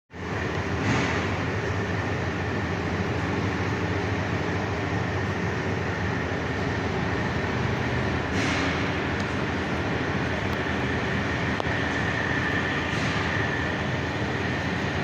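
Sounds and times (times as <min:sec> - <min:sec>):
machine hiss: 0:08.2 - 0:09.2.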